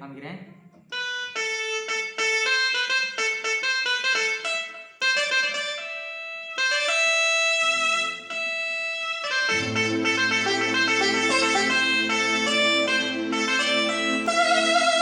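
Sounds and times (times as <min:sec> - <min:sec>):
keyboard playing reedy melody: 0:00.9 - 0:15.0.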